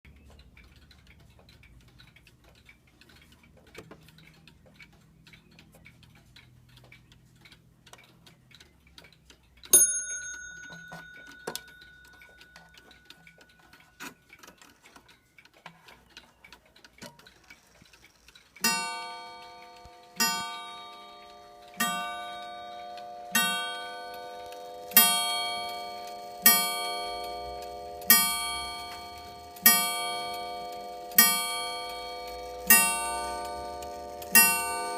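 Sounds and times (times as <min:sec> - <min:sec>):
mantel clock ticking: 0:00.1 - 0:34.9
clock striking with ringing blows: 0:18.6 - 0:34.9.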